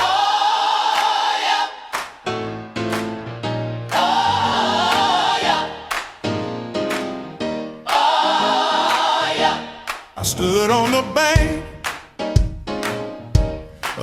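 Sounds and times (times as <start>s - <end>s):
choir singing held chords: 0.0s - 2.4s, 3.8s - 11.8s.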